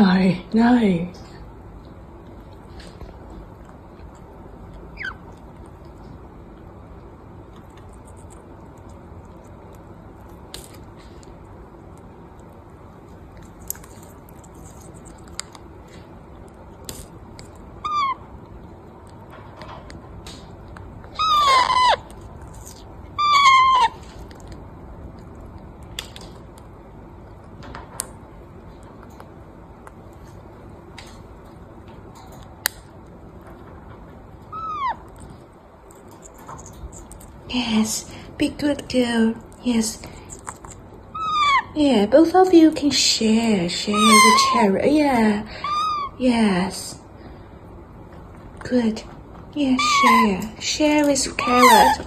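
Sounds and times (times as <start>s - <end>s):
parrot squawking: 5.0s - 5.3s, 17.8s - 18.3s, 21.1s - 22.2s, 23.2s - 24.1s, 34.5s - 35.1s, 41.1s - 41.8s, 43.8s - 44.8s, 45.5s - 46.2s, 49.8s - 50.5s, 51.3s - 52.0s.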